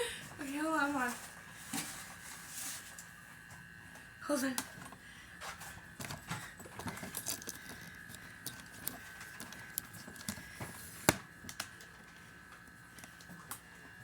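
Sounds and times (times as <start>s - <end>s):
eggs clicking into plastic holders: 6.8s - 11.9s.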